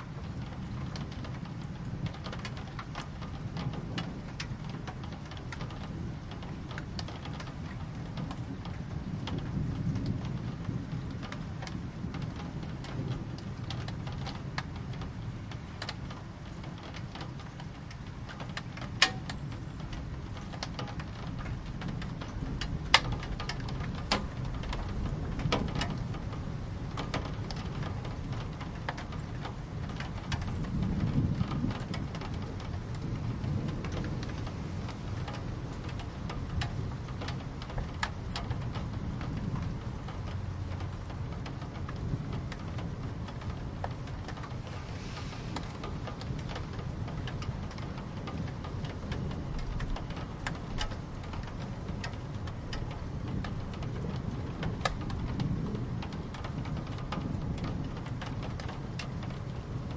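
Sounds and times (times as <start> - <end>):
distant thunder rumble: 0.0 - 59.9
raindrops tapping hard surface: 0.0 - 59.9
steady rain: 0.0 - 59.9.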